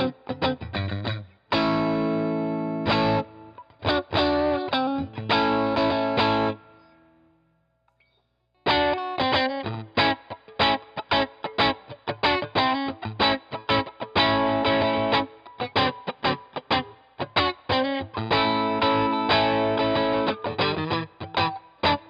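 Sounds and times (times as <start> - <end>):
quick picked guitar notes: 0.0 - 7.2
overdriven electric guitar chords: 0.0 - 7.4, 8.6 - 22.0.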